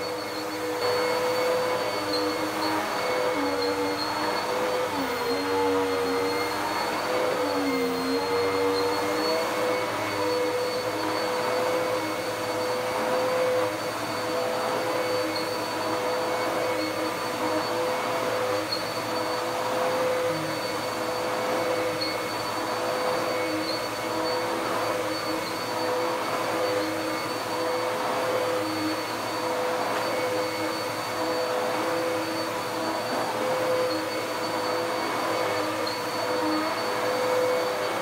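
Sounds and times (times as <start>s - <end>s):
vacuum cleaner motor whine: 0.0s - 38.0s.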